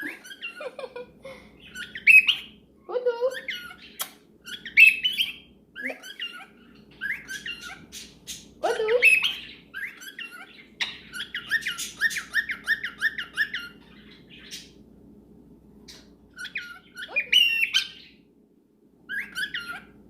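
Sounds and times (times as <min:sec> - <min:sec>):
cockatiel chirping: 0:00.0 - 0:00.8, 0:01.6 - 0:02.6, 0:03.3 - 0:14.8, 0:15.9 - 0:18.2, 0:19.1 - 0:19.9
loud cockatiel calls: 0:09.0 - 0:14.7, 0:16.4 - 0:18.1, 0:19.1 - 0:19.9.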